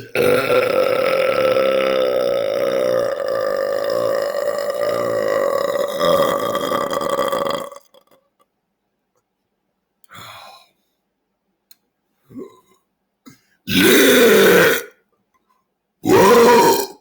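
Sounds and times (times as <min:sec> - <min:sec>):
man belching: 0:00.0 - 0:08.2, 0:13.7 - 0:14.9, 0:16.0 - 0:17.0.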